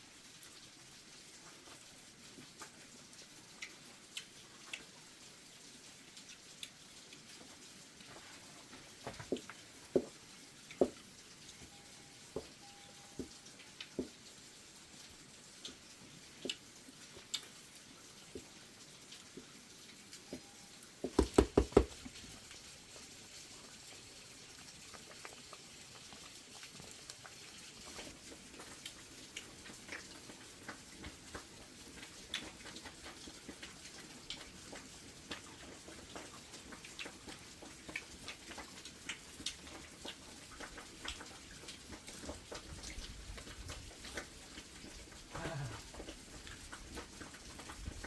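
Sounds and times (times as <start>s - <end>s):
faint scattered ticks and patter: 0.0s - 48.0s
sharp knocks: 21.1s - 22.0s.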